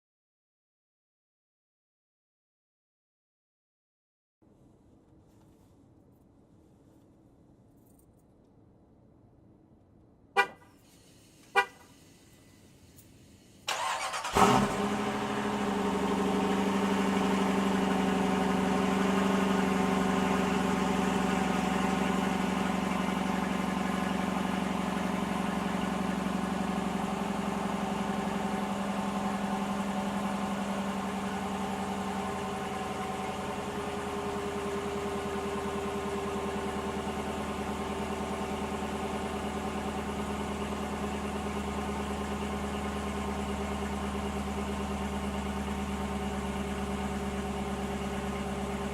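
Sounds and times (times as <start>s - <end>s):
car engine idling: 10.4s - 48.9s.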